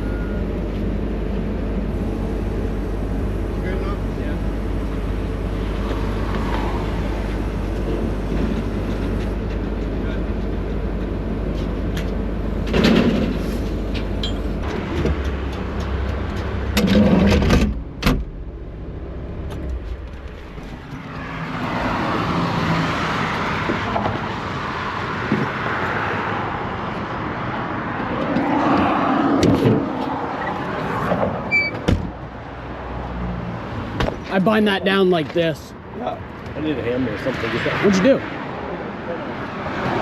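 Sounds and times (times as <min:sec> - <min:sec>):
heavy machinery rumbling: 0:00.0 - 0:22.5
rushing vehicle noise: 0:00.0 - 0:40.0.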